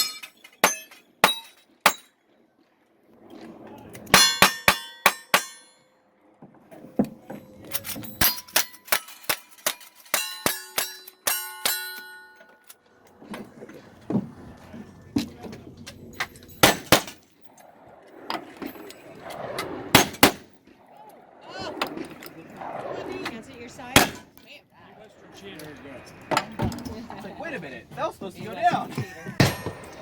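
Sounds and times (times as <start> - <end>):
bullets clanging on steel targets: 0.0 - 2.1, 4.2 - 5.8, 8.0 - 12.8
gunshots: 24.0 - 24.3.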